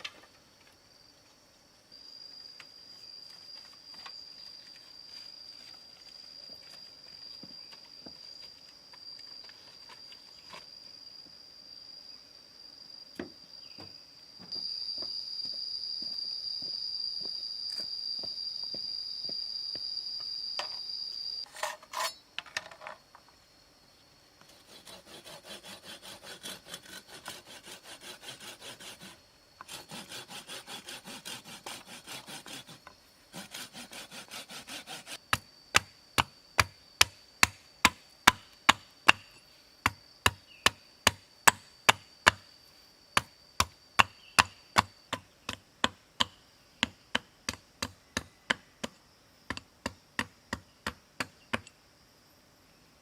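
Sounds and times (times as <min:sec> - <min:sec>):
high insect drone: 0:00.0 - 0:53.0
sawing wood by hand: 0:21.5 - 0:22.2, 0:24.5 - 0:35.2
chopping strikes on wood: 0:35.3 - 0:42.4, 0:43.2 - 0:51.7.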